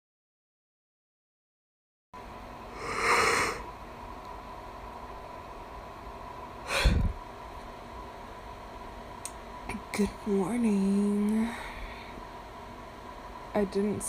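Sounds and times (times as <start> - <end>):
faint steady hum: 2.2 - 14.0
person breathing close to microphone: 2.7 - 3.7, 6.7 - 7.2.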